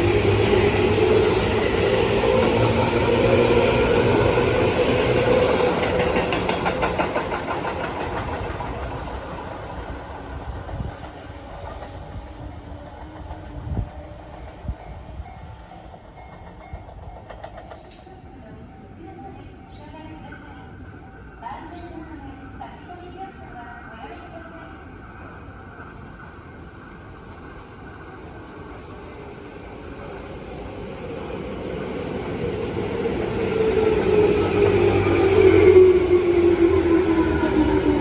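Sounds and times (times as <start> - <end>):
wheels clicking over rail joints: 5.7 - 9.2.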